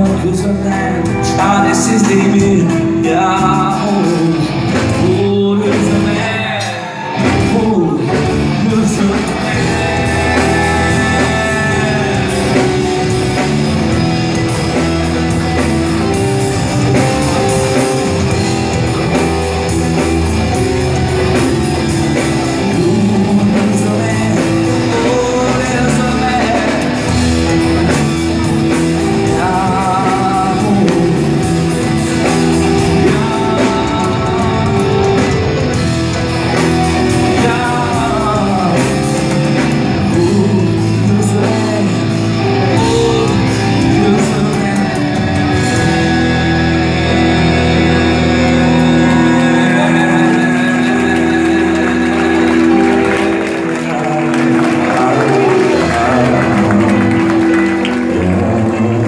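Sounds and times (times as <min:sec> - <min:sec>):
rock band with guitar: 0:00.0 - 0:59.0.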